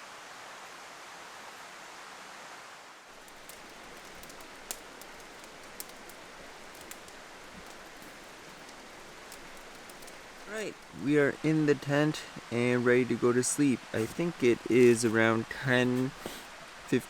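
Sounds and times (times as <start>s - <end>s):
river rapids rushing: 3.1s - 17.0s
faint ticks: 3.2s - 10.9s.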